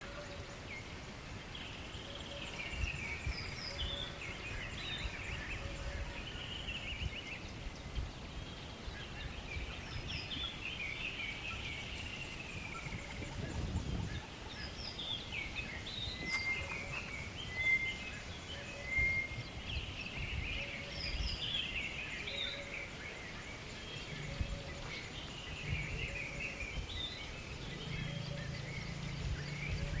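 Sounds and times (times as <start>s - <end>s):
birds chirping and warbling: 0.0s - 30.0s.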